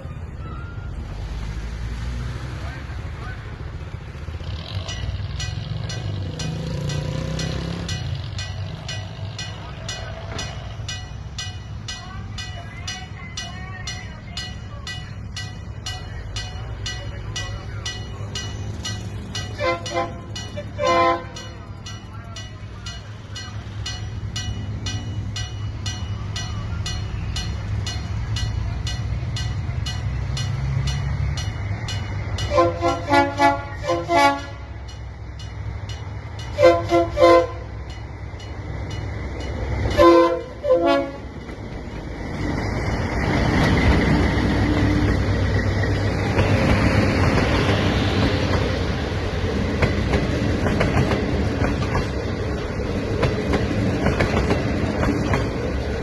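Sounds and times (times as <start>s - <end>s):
locomotive engines rumbling: 0.0s - 56.0s
train wheels clattering on rails: 4.0s - 56.0s
locomotive air horn blasts: 19.6s - 21.4s, 32.4s - 34.8s, 36.5s - 37.7s, 39.9s - 41.3s.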